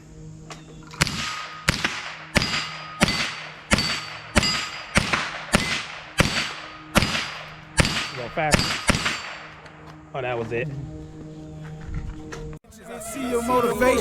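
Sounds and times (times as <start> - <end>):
rifle shots with ringing tail: 0.9 - 9.6.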